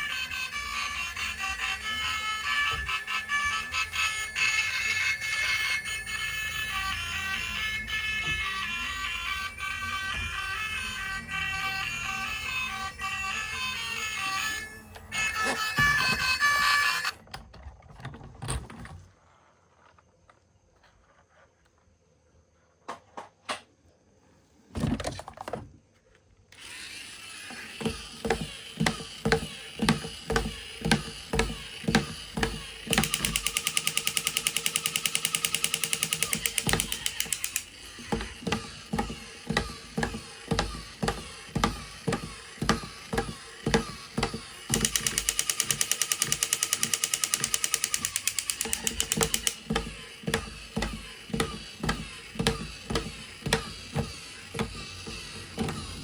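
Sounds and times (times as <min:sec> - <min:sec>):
toy vehicle running: 0:00.0 - 0:17.2, 0:26.5 - 0:56.0
fast jackhammer-like rattling: 0:27.3 - 0:56.0.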